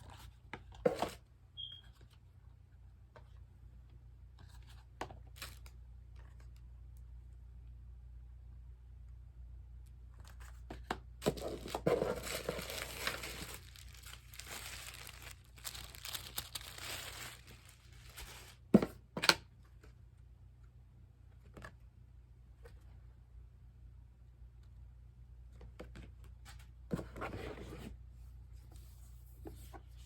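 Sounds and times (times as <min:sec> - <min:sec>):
packaging crinkling and tearing: 0:11.4 - 0:18.6.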